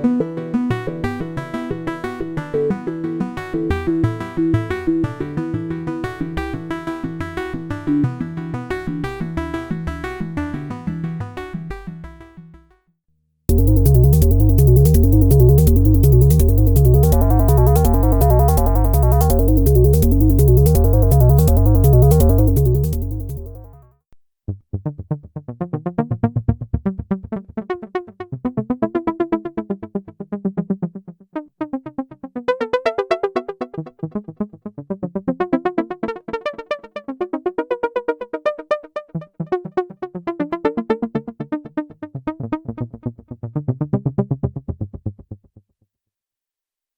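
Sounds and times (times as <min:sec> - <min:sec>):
clicky pulsed synth notes: 0:13.5 - 0:23.8
synthesizer bass sequence: 0:13.5 - 0:23.8.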